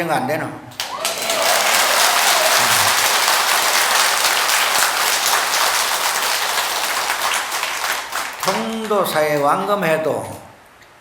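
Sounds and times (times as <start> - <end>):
audience applauding: 0.8 - 9.5.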